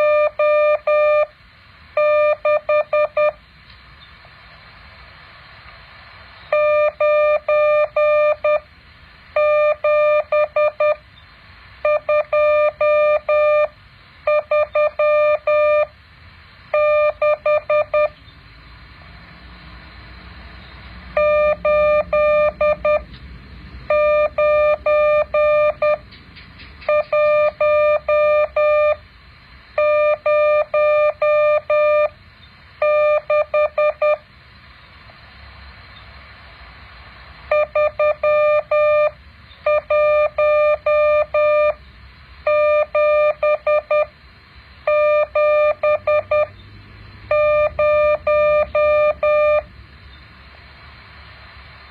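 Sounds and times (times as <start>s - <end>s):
morse code beeps: 0.0s - 1.3s, 2.0s - 3.4s, 6.5s - 8.6s, 9.4s - 11.0s, 11.8s - 13.7s, 14.3s - 15.9s, 16.7s - 18.2s, 21.2s - 23.1s, 23.9s - 26.0s, 26.9s - 29.0s, 29.8s - 32.2s, 32.8s - 34.2s, 37.5s - 41.8s, 42.4s - 44.1s, 44.9s - 46.5s, 47.3s - 49.7s
faint hiss: 0.0s - 25.2s, 25.9s - 45.3s, 49.7s - 51.9s.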